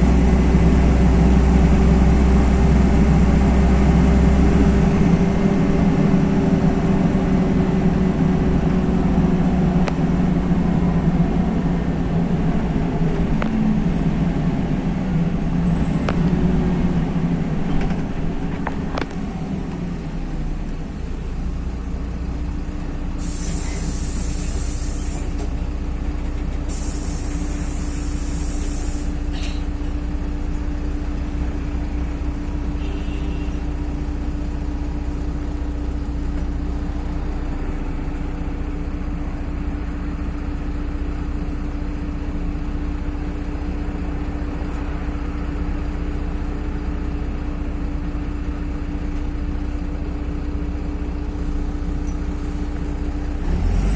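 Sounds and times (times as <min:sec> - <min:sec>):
bus diesel engine running: 0:00.0 - 0:53.9
compressed air hiss: 0:23.2 - 0:25.4, 0:26.7 - 0:29.2.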